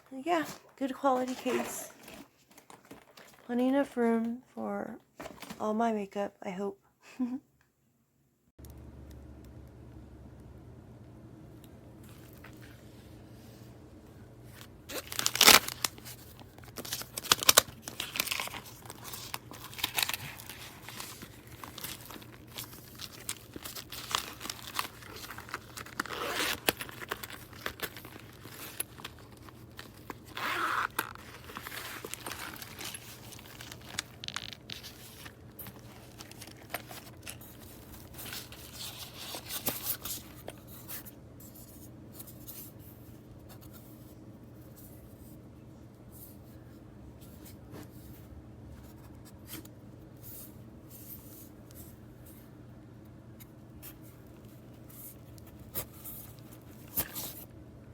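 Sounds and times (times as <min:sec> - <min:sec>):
faint steady hum: 0:00.0 - 0:57.9
makeup items clicking and rustling: 0:00.1 - 0:03.7, 0:15.0 - 0:40.6.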